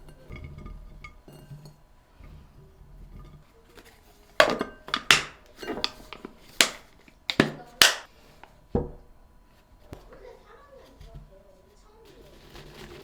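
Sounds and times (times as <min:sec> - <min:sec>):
dishes knocking and clinking: 0:04.4 - 0:08.1, 0:08.7 - 0:09.1.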